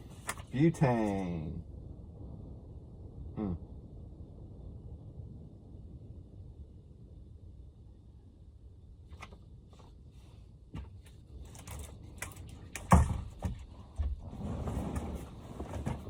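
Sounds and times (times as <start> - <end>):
steady low noise: 0.0 - 16.0
camping gear clicks and knocks: 10.8 - 14.2.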